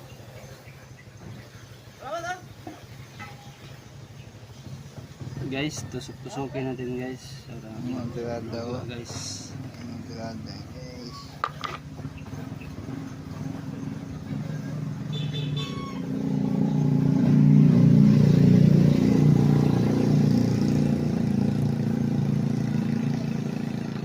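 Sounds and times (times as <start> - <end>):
engine running and revving: 7.8 - 24.0.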